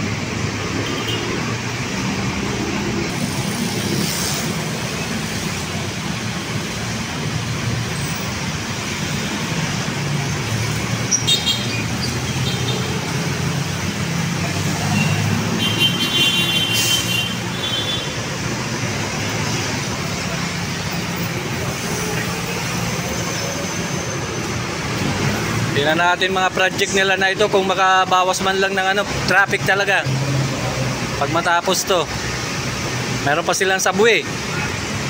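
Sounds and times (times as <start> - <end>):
traffic engines rumbling: 0.0 - 35.0.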